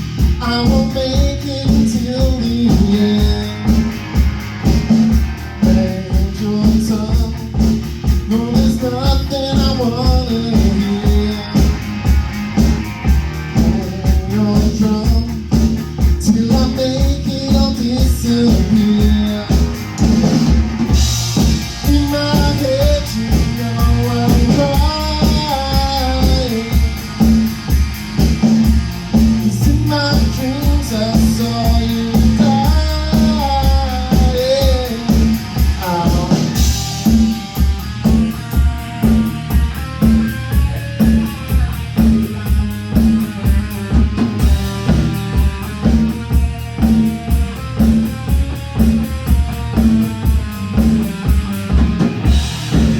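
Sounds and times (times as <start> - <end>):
rock band playing live: 0.0 - 52.9
person singing: 0.4 - 4.1, 5.3 - 12.0, 13.5 - 15.6, 16.2 - 20.0, 21.6 - 27.2, 29.4 - 48.4.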